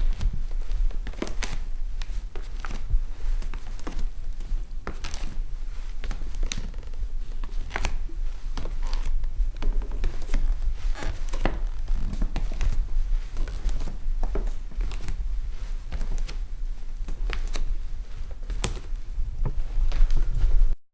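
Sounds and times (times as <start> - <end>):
bare footsteps on floor: 0.0 - 20.8.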